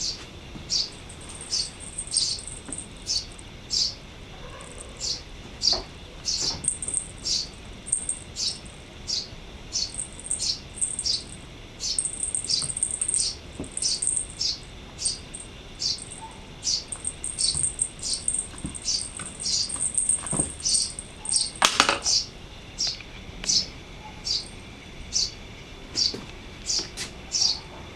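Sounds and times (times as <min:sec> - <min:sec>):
songbird chirping: 0:00.0 - 0:04.0, 0:04.7 - 0:25.4
thin high bird trill: 0:00.0 - 0:25.4.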